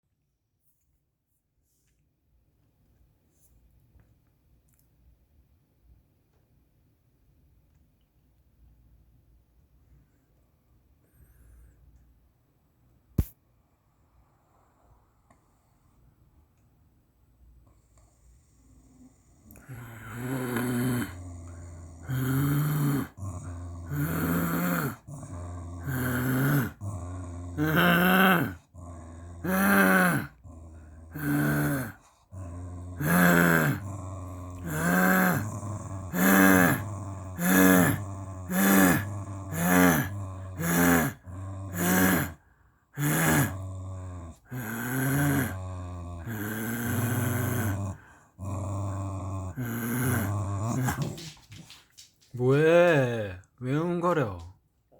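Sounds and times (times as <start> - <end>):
dog grumbling with breathing: 19.4 - 52.0.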